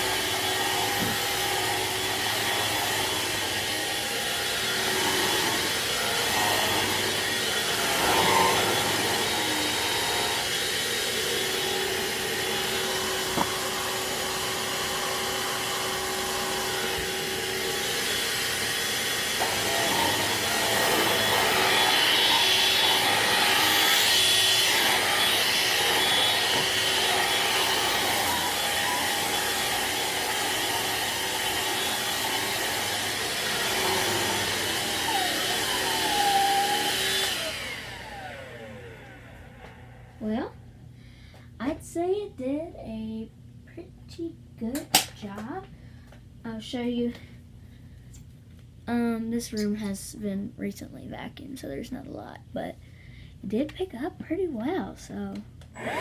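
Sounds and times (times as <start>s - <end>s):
vacuum cleaner motor whine: 0.0s - 40.3s, 55.8s - 56.0s.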